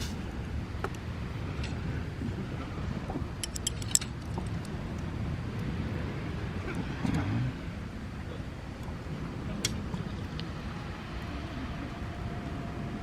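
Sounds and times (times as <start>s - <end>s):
steady low rumble: 0.0s - 13.0s
cooking gear clinking: 3.4s - 4.4s.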